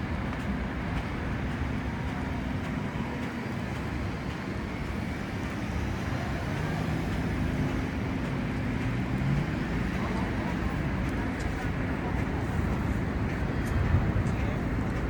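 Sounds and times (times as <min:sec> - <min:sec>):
city traffic rumble: 0:00.0 - 0:15.0.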